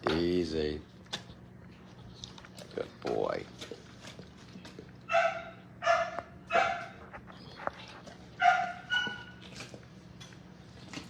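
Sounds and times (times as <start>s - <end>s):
dog barking: 5.1s - 7.6s, 8.3s - 9.6s.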